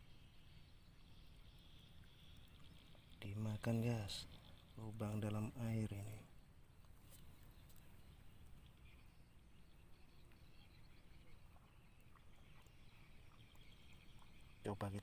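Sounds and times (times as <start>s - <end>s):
soft ticks: 6.8s - 7.9s.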